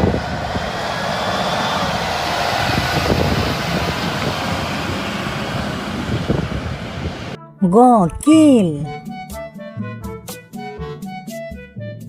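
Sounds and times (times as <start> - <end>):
vehicle engine rumble: 0.1 - 7.4.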